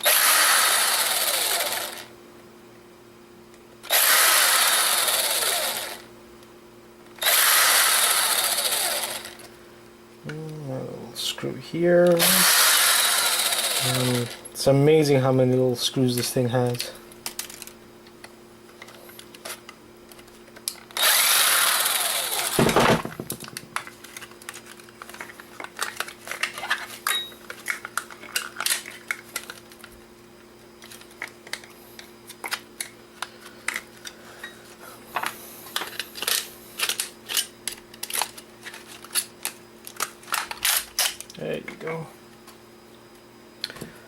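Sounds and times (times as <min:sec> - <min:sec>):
electric screwdriver running: 0:00.0 - 0:02.1, 0:03.8 - 0:06.1, 0:07.2 - 0:09.5, 0:12.1 - 0:14.4, 0:21.0 - 0:23.0.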